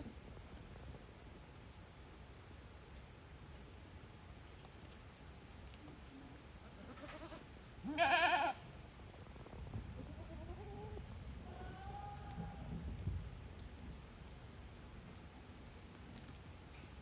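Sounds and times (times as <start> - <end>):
goats bleating: 6.6 - 8.6.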